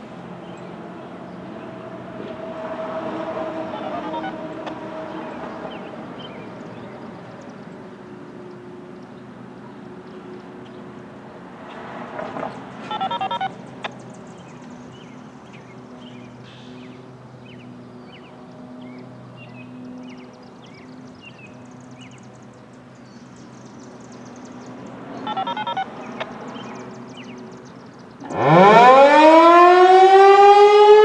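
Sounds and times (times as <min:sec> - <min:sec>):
electronic tone beeps: 0:03.7 - 0:04.4, 0:12.9 - 0:13.6, 0:25.2 - 0:26.3.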